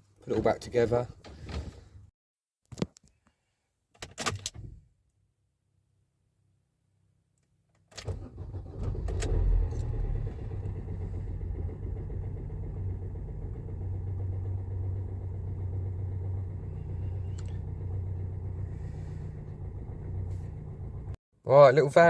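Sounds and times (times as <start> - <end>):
diesel engine starting and idling: 8.0 - 21.2.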